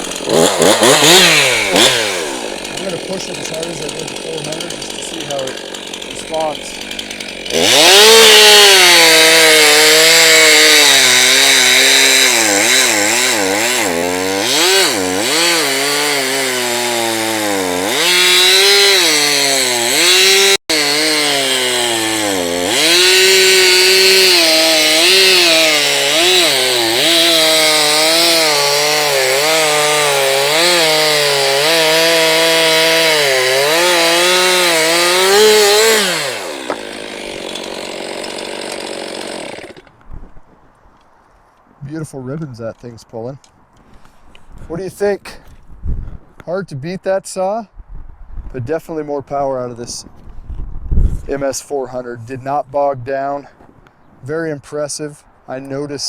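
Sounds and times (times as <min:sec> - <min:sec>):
chainsaw cutting through log: 0:00.0 - 0:40.0.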